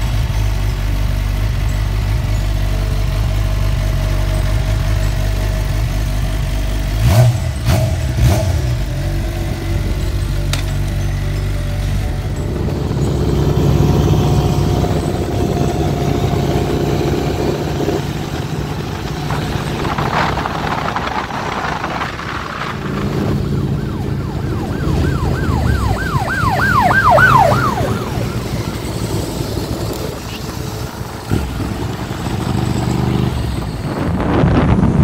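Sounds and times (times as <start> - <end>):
vehicle engine running: 0.0 - 35.0
emergency siren yelping: 22.6 - 29.8.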